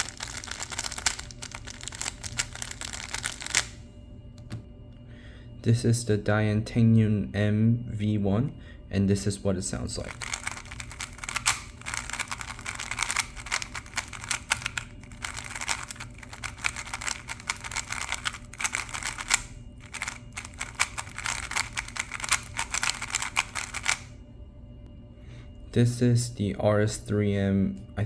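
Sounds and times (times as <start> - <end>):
puzzle cube turning clicks: 0.0 - 3.8, 10.1 - 24.1.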